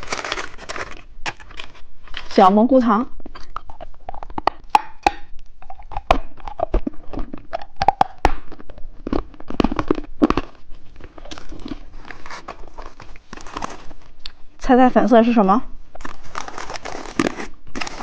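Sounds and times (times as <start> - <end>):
plastic wrappers crinkling: 0.0 - 2.5, 8.5 - 14.2, 16.0 - 18.0.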